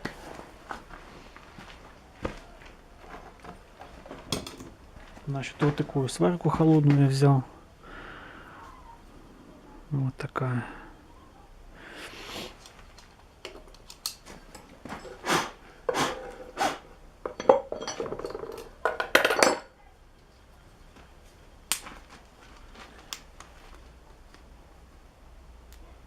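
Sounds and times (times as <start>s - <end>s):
small hard objects clinking: 17.2s - 19.7s.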